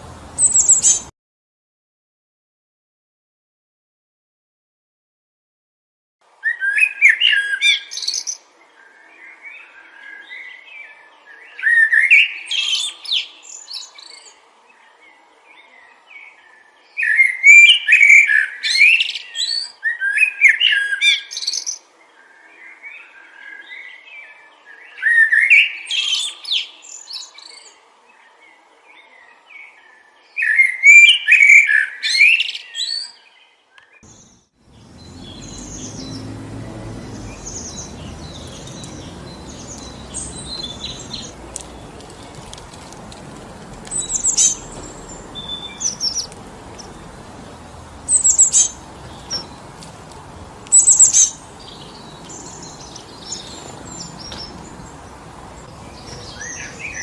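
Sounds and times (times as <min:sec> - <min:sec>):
soft bird calls: 0:00.0 - 0:01.1, 0:29.6 - 0:57.0
songbird singing: 0:00.0 - 0:01.1, 0:06.4 - 0:57.0.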